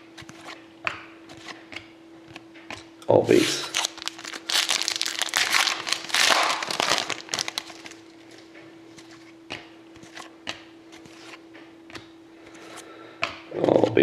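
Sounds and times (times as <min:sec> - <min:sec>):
card pack wrapper crinkling and tearing: 0:03.3 - 0:08.0.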